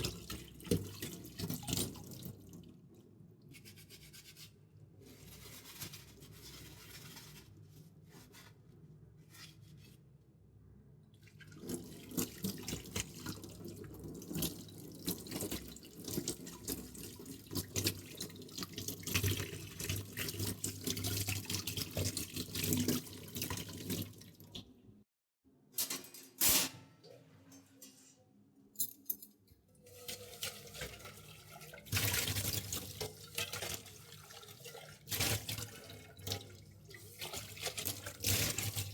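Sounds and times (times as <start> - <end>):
metal utensils knocking and clinking: 25.8 - 26.6.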